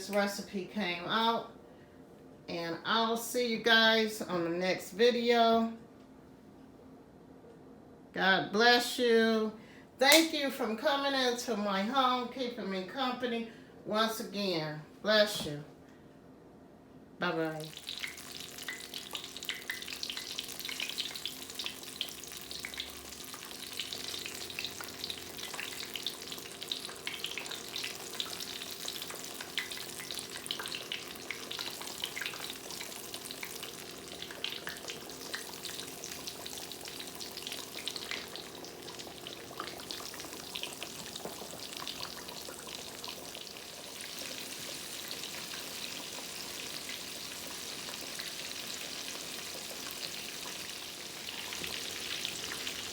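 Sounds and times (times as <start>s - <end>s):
tomato slices sizzling in oil: 17.6s - 52.9s.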